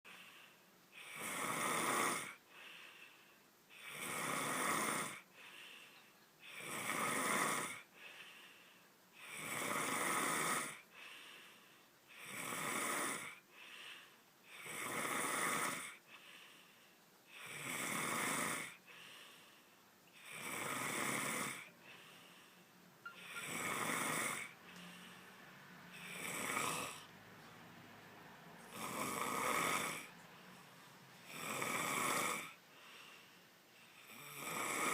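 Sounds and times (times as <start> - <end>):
person snoring loudly: 1.0 - 2.4, 3.8 - 5.2, 6.5 - 7.9, 9.2 - 10.8, 12.2 - 13.4, 14.5 - 16.0, 17.3 - 18.8, 20.2 - 21.7, 23.1 - 25.1, 25.9 - 27.1, 28.7 - 30.1, 31.3 - 32.6, 34.0 - 34.9.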